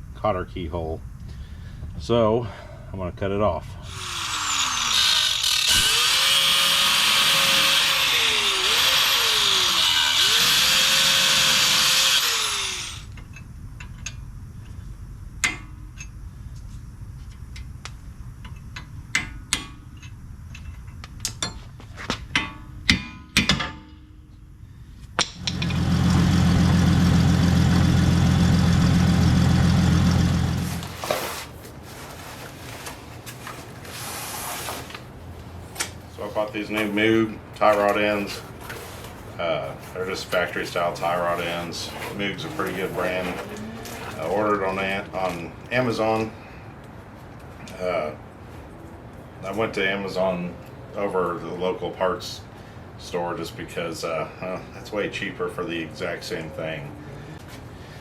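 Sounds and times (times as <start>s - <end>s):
power tool cutting steel nut: 3.9s - 13.2s, 25.2s - 31.0s.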